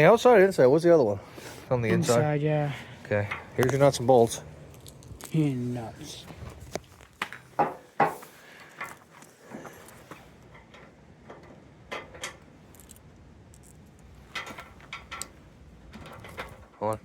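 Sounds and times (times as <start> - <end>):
nuts and bolts clicking: 8.6 - 17.0.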